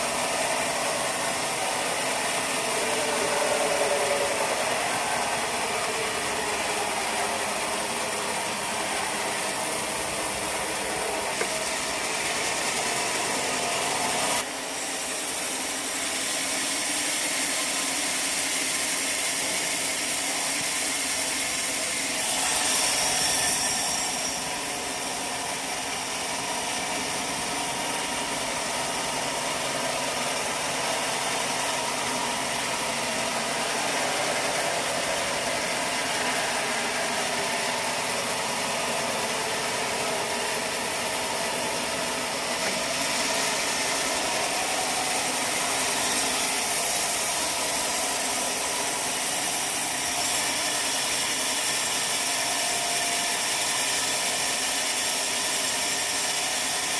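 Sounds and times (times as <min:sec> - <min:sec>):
sawmill machinery running: 0:00.0 - 0:56.9.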